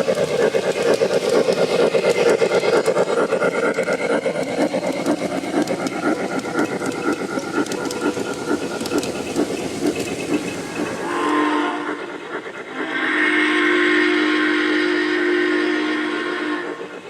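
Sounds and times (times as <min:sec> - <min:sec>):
model locomotive rhythmic chuffing: 0:00.0 - 0:17.0
train whistle toot: 0:11.0 - 0:17.0.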